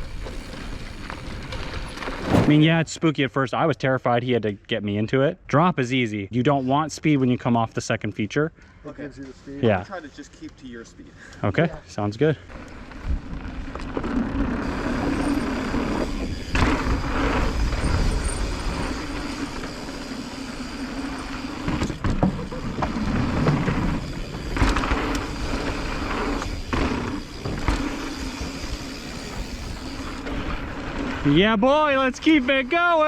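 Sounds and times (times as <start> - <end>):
tyre noise on dirt: 0.0 - 2.8, 12.6 - 31.5
wind noise: 0.0 - 2.8, 14.6 - 19.8
electric motor hum: 14.5 - 31.2
bike knocks and rattles: 21.6 - 30.0.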